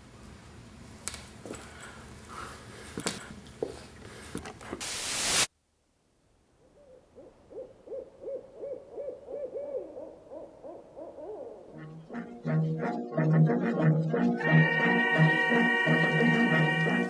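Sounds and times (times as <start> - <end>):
hiss: 4.8 - 5.5
owl hooting: 6.7 - 12.6.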